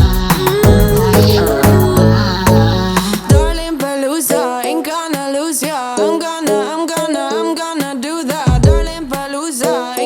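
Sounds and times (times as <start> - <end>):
bass note sliding down: 0.0 - 3.1
song with sung vocals: 0.0 - 10.0.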